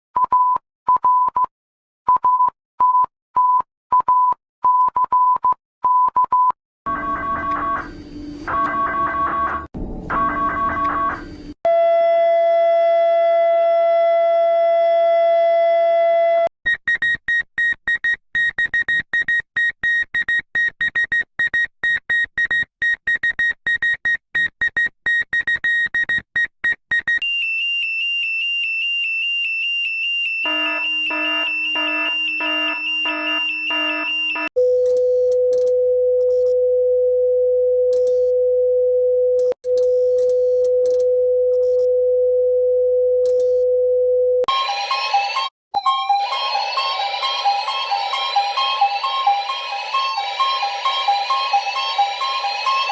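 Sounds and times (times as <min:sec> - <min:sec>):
electronic emergency alert tones: 0:30.2 - 0:34.5.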